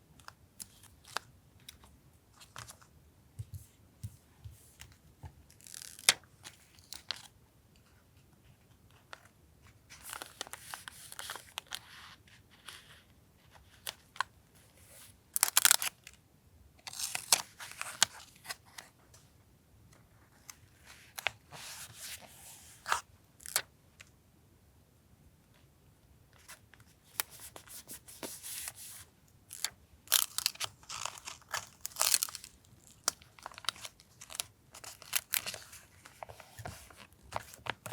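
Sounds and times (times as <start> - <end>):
paper rustling: 27.2 - 37.9.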